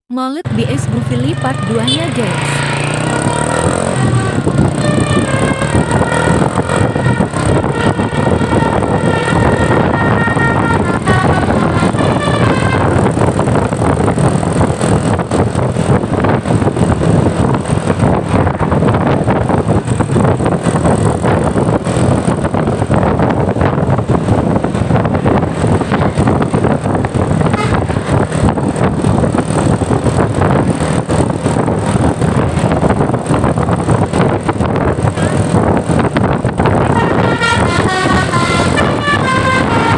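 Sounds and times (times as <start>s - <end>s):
bus engine running: 0.2s - 39.9s
multi-note bus horn melody: 1.2s - 13.4s, 27.4s - 28.3s, 36.6s - 39.9s.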